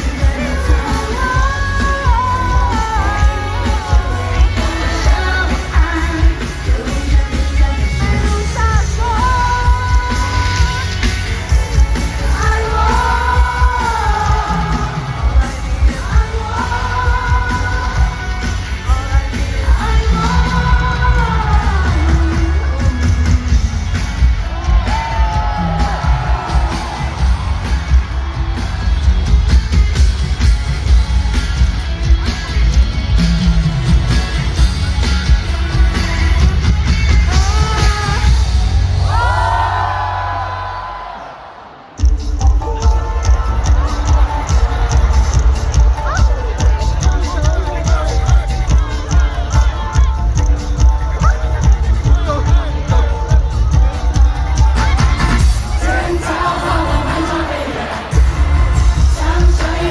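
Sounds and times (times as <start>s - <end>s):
woman singing pop music: 0.0s - 30.0s, 30.8s - 41.2s, 42.1s - 59.9s
heavy bass beat: 0.0s - 40.8s, 42.0s - 59.9s
audience cheering: 23.4s - 31.7s, 37.7s - 42.3s, 53.8s - 59.9s.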